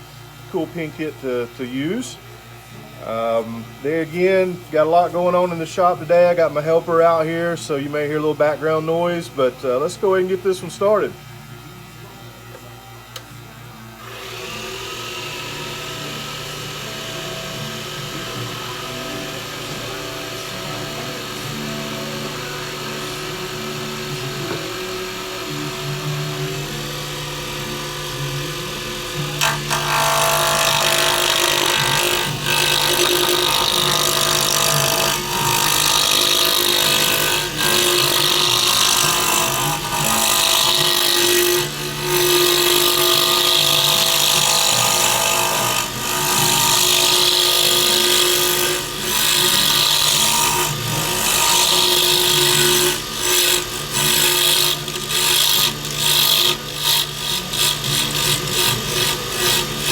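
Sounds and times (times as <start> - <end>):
cutter cutting wood: 14.0 - 59.9
power tool motor humming: 14.0 - 59.9.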